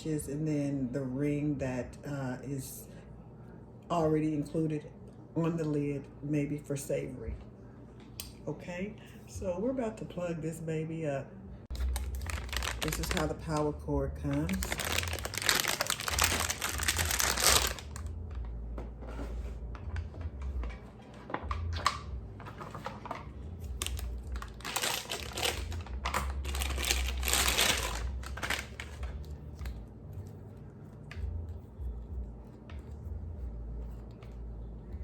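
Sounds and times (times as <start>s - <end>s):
plastic packaging crinkling: 11.7s - 18.2s, 21.4s - 29.8s.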